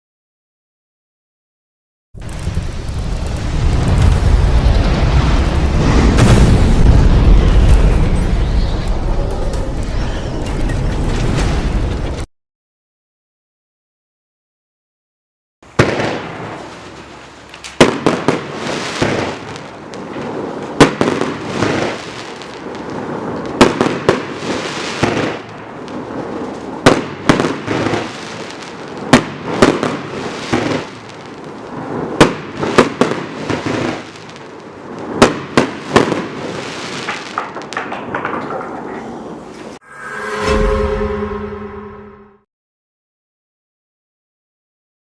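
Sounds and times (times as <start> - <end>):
fireworks crackling: 2.2 - 12.2, 15.7 - 39.8
fireworks bangs: 2.2 - 12.3, 15.6 - 39.8.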